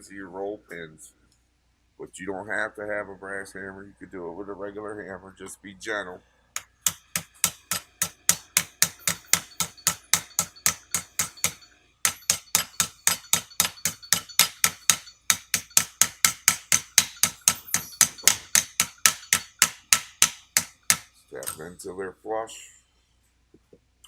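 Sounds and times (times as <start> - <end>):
hammer tapping pins into metal: 6.6 - 21.6.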